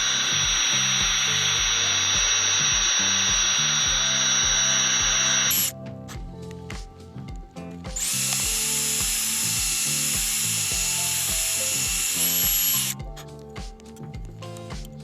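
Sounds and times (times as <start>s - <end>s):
power drill running: 0.0s - 5.7s, 8.0s - 13.0s.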